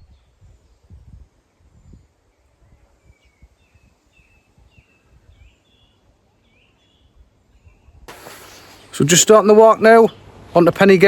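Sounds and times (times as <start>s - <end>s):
wind rumble on microphone: 0.0s - 5.6s
faint birdsong chirping: 0.0s - 10.6s.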